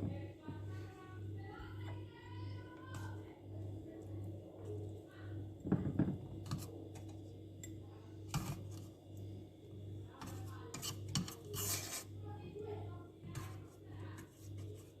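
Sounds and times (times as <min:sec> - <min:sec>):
faint low pulsing hum: 0:00.0 - 0:10.7.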